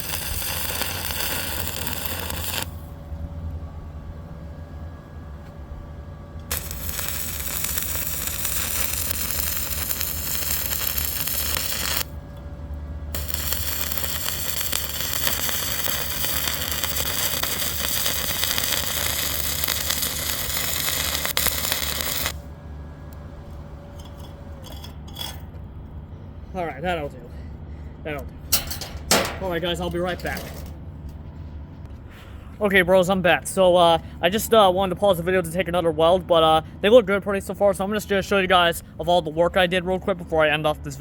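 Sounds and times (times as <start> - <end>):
welding arc crackling and hissing: 0.0 - 2.9, 6.5 - 12.2, 13.1 - 22.4
low hum: 0.0 - 40.4.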